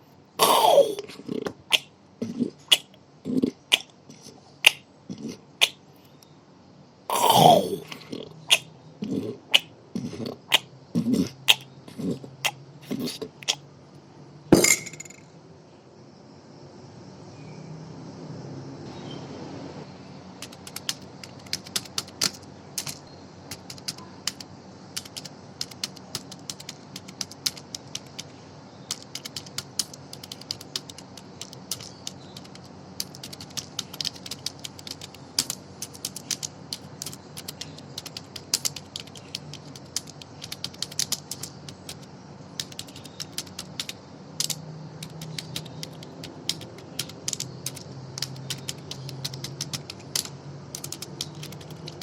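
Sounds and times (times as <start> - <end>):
sharp mechanical clicks: 20.4 - 28.3, 28.9 - 52.0.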